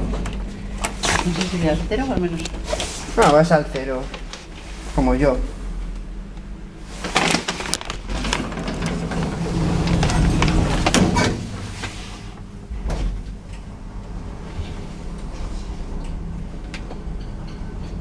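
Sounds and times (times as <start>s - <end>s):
lift mechanical running noise: 0.0s - 18.0s
lift doors sliding closed: 7.0s - 13.4s
rattling: 7.1s - 11.9s.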